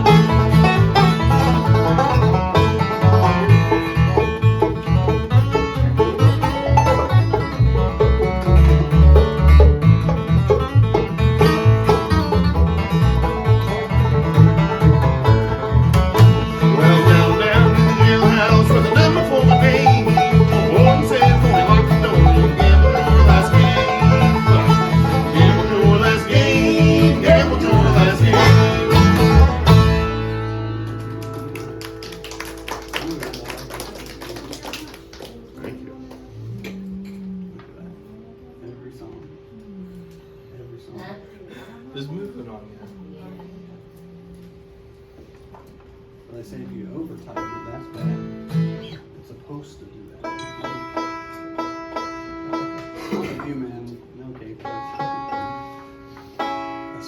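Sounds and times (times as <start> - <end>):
bouncing bass line: 0.0 - 31.2
rolling banjo picking: 0.0 - 31.8, 47.2 - 49.0, 50.2 - 57.0
bluegrass band playing: 0.0 - 36.5, 47.2 - 49.3, 50.1 - 57.0
acoustic guitar: 0.0 - 57.0.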